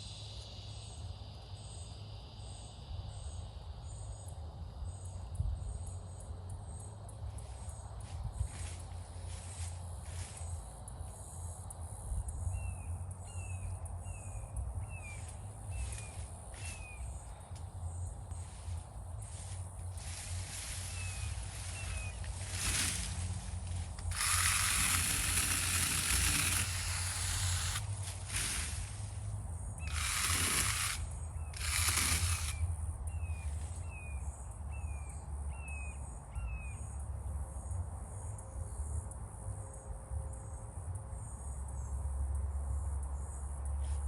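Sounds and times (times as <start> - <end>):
steady low hum: 4.2 - 35.3
rustling noise: 18.4 - 24.7.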